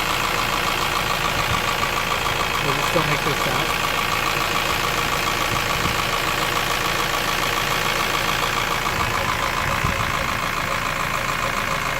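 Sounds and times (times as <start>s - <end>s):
car engine with fast knock: 1.0s - 7.2s, 7.8s - 10.5s.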